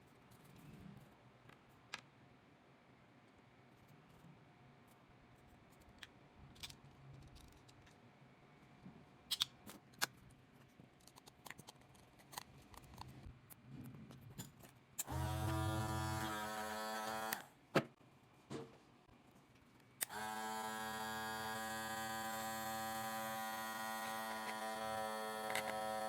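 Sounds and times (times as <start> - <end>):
hair clipper buzzing: 15.0 - 17.5, 20.0 - 26.0.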